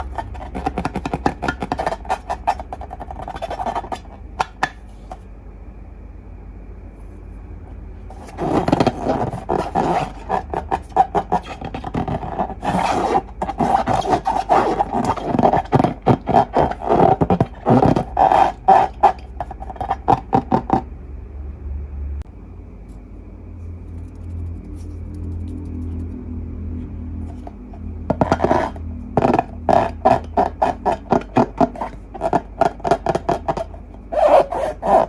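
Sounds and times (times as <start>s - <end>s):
rubbery squeaks: 0.0s - 5.2s, 8.1s - 20.8s, 27.2s - 35.0s.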